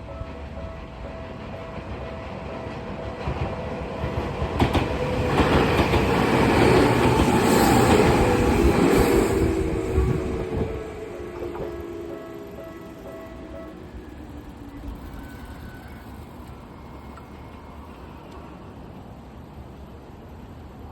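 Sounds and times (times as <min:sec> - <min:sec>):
train wheels clattering on rails: 0:01.2 - 0:16.6.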